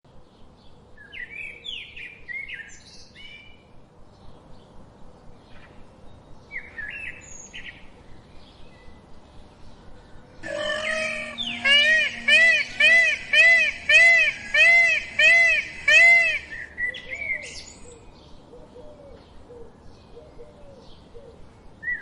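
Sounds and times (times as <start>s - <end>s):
small birds chirping: 4.2s - 18.5s
loud multi-pitched sound: 10.4s - 16.6s.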